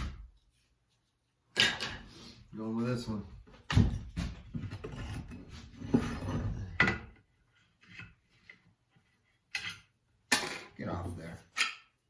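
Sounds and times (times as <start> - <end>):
wood rubbing and shuffling: 2.7 - 9.5.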